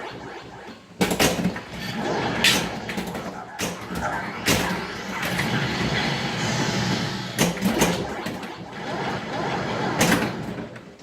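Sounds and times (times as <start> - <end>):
pinball machine din: 0.0 - 11.0
pinball sharp clacks: 1.0 - 1.7.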